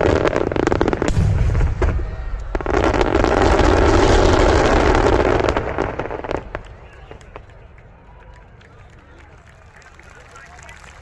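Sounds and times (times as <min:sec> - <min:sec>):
fireworks bursting and crackling: 0:00.0 - 0:07.9.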